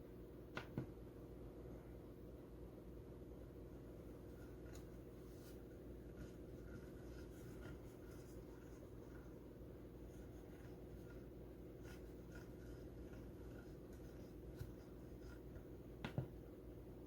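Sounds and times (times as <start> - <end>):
steady low hum: 0.0 - 17.0
scratchy rustles and ticks: 4.3 - 15.8.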